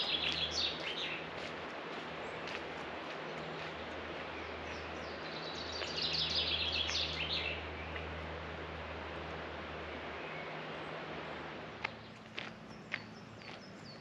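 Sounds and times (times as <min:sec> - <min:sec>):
songbird chirping: 0:00.0 - 0:01.5, 0:02.2 - 0:08.2, 0:10.0 - 0:11.0, 0:11.8 - 0:14.0.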